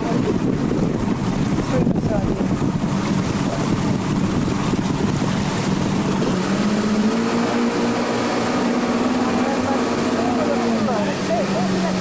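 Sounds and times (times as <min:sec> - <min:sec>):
outboard motor running: 0:00.0 - 0:12.0.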